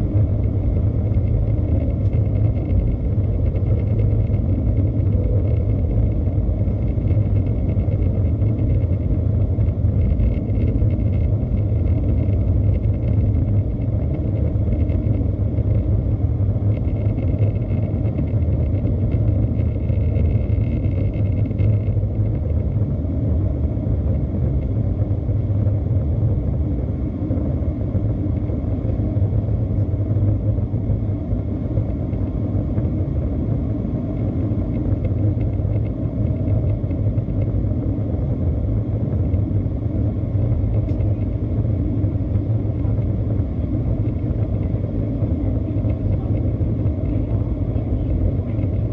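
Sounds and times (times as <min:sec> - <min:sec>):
faint high whine: 0:00.0 - 0:23.0
jet engines rumbling: 0:00.0 - 0:48.9.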